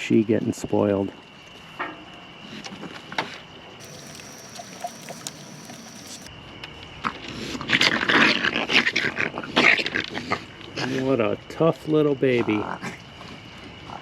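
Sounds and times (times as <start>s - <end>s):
raccoons growling and snarling: 7.6s - 11.1s.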